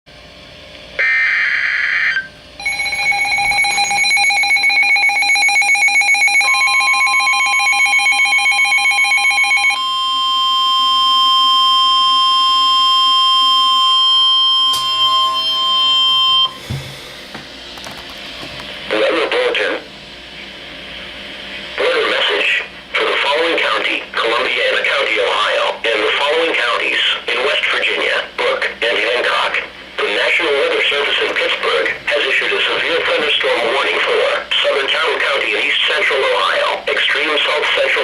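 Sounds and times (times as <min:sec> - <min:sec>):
pulsing electronic alarm beeps: 0:01.0 - 0:16.6
high-pitched warning alarm tone: 0:01.0 - 0:16.9.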